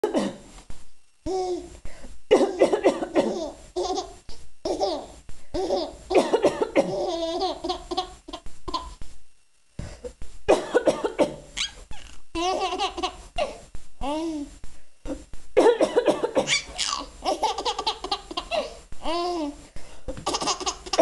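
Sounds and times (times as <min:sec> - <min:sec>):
woman coughing: 0:02.3 - 0:03.3, 0:06.2 - 0:07.0, 0:10.5 - 0:11.4, 0:15.6 - 0:16.7
child laughing: 0:11.6 - 0:13.2, 0:16.5 - 0:19.4, 0:20.2 - 0:21.0.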